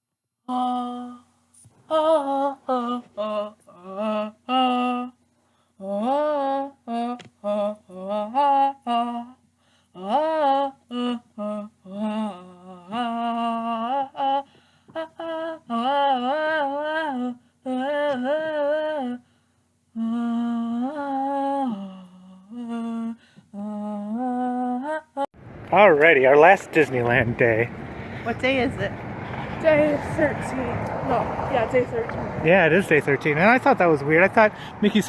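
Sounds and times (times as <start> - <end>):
person humming a tune: 0.5 - 1.3, 1.9 - 5.2, 5.8 - 9.4, 10.0 - 19.2, 19.9 - 25.3.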